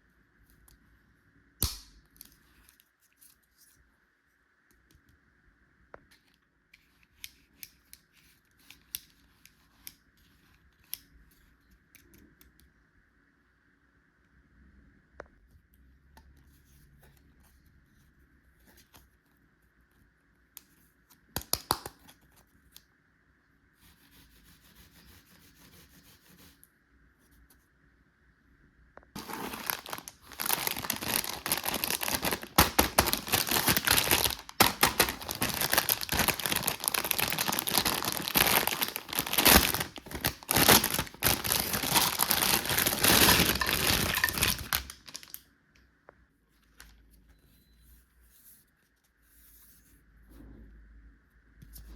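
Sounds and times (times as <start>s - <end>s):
packaging crinkling and tearing: 29.2s - 45.4s.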